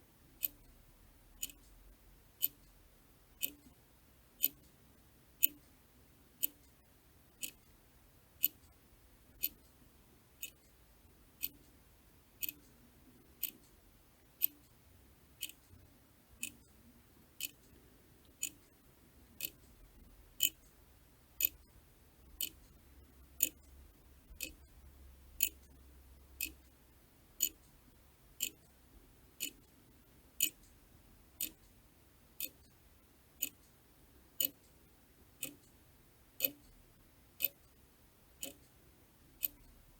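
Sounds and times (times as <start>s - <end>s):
clock ticking: 0.4s - 0.7s, 1.4s - 1.7s, 2.4s - 2.7s, 3.4s - 3.8s, 4.4s - 4.7s, 5.4s - 5.6s, 6.4s - 6.6s, 7.4s - 7.6s, 8.4s - 8.7s, 9.4s - 9.7s, 11.4s - 11.7s, 12.4s - 12.7s, 13.4s - 13.7s, 14.4s - 14.7s, 15.4s - 15.8s, 16.4s - 16.7s, 17.4s - 17.6s, 18.3s - 18.7s, 19.4s - 19.7s, 20.4s - 20.7s, 21.4s - 21.7s, 22.3s - 23.7s, 24.3s - 24.8s, 25.4s - 25.8s, 26.4s - 26.6s, 27.4s - 27.7s, 28.4s - 28.7s, 29.4s - 29.7s, 30.4s - 30.8s, 31.4s - 31.7s, 32.4s - 32.8s, 33.4s - 33.7s, 34.4s - 34.8s, 35.4s - 35.8s, 36.4s - 36.8s, 37.4s - 37.8s, 38.4s - 38.7s, 39.4s - 39.9s.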